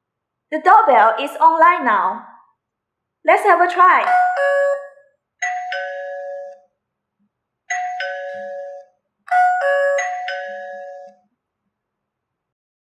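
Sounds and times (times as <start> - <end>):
two-tone doorbell chime: 4.0 - 6.7, 7.7 - 11.3.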